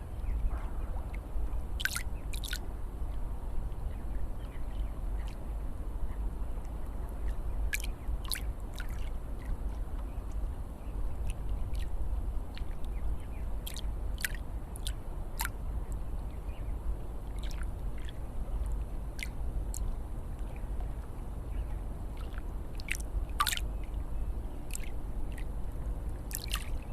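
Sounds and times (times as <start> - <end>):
water splashes and drips: 0.2 - 2.7, 5.2 - 5.4, 6.6 - 10.5, 11.2 - 13.0, 13.6 - 16.3, 17.2 - 21.3, 22.1 - 24.0, 24.6 - 26.9.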